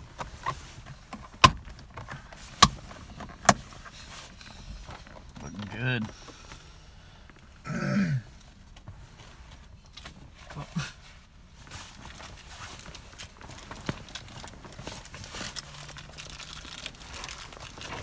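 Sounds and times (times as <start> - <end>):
clicks and knocks of hard parts: 0.2 - 3.7.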